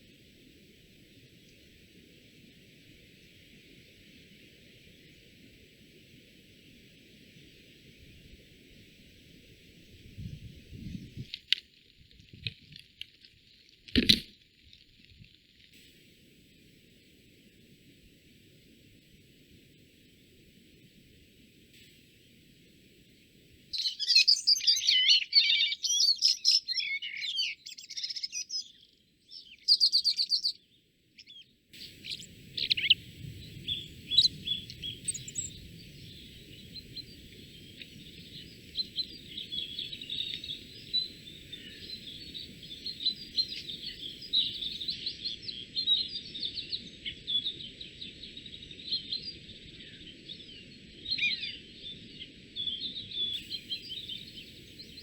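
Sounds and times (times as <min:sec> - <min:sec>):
low rushing background noise: 0:15.8 - 0:23.8, 0:31.8 - 0:44.9, 0:53.4 - 0:55.0
chorus of chirping birds: 0:23.7 - 0:50.2, 0:52.6 - 0:55.0
songbird trilling song: 0:23.7 - 0:55.0.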